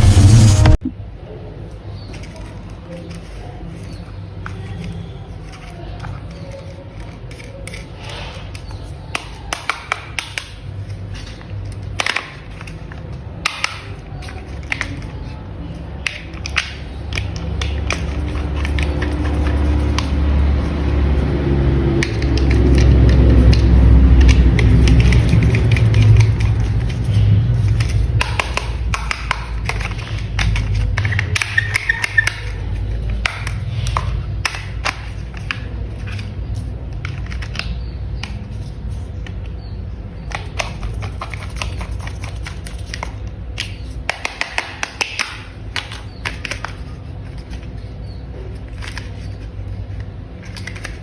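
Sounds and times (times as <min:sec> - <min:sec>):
low steady rumble: 0:00.0 - 0:01.1, 0:16.9 - 0:31.5
low hum: 0:00.0 - 0:01.2
plastic parts clicking: 0:22.0 - 0:39.6, 0:40.3 - 0:47.8, 0:48.5 - 0:51.0.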